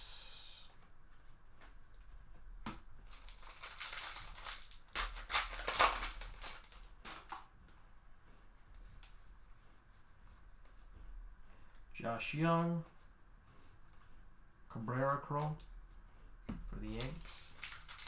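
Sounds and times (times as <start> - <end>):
plastic foil wrapper crinkling: 3.0 - 7.5, 16.8 - 18.0.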